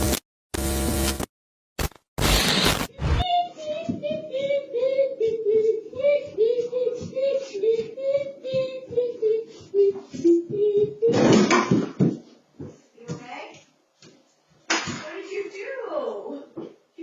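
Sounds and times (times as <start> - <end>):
child singing: 3.2 - 11.4.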